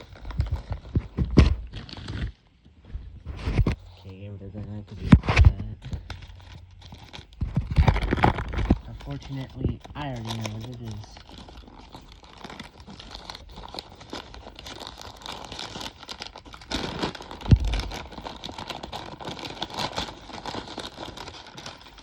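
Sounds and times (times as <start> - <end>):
packaging crinkling and tearing: 0.0 - 2.5, 4.7 - 22.0
loud dull thump: 17.5 - 17.9.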